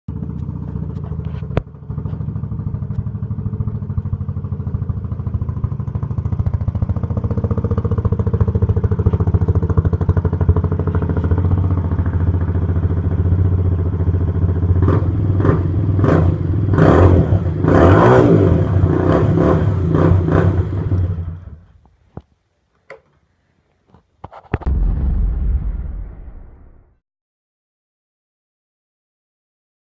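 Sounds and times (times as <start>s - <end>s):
engine through straight pipe exhaust: 0.1s - 21.6s.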